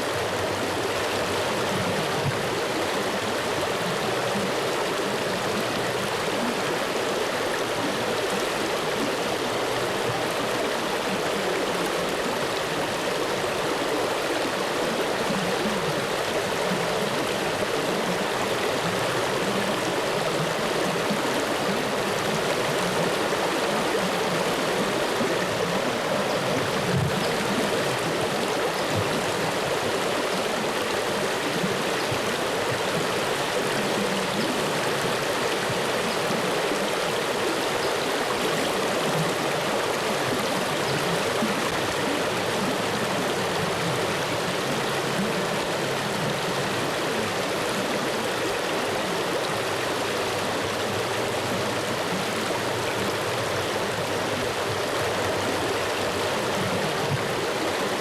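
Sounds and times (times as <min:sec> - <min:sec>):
flowing water rushing: 0:00.0 - 0:58.0.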